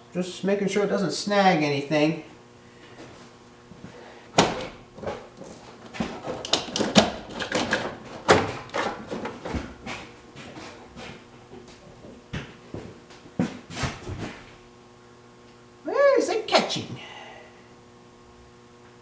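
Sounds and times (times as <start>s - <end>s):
cable dragging with knocks and rattles: 4.4s - 11.8s.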